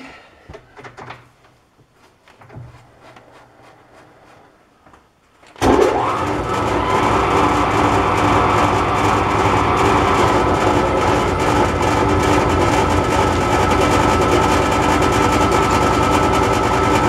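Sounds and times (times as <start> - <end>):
metal lathe whining: 5.6 - 17.0.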